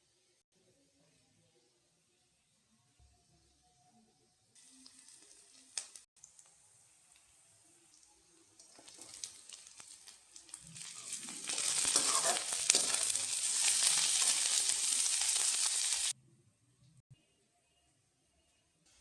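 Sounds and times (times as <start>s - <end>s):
food sizzling in a hot pan: 4.6s - 16.2s.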